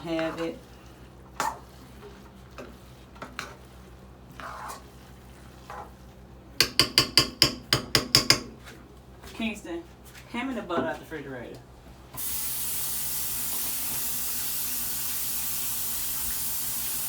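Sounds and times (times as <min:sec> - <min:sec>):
utensil scraping cooking pot: 0:00.0 - 0:08.8.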